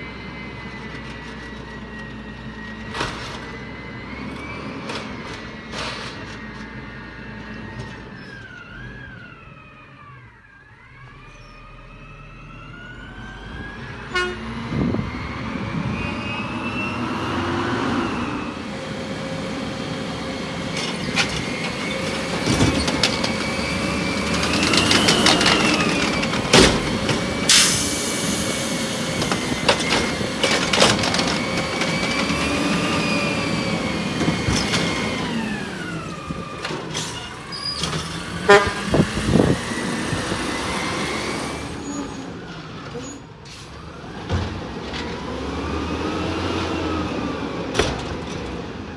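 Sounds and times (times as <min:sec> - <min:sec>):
diesel truck engine: 0:00.0 - 0:48.9
wavering horn tone: 0:14.1 - 0:14.6.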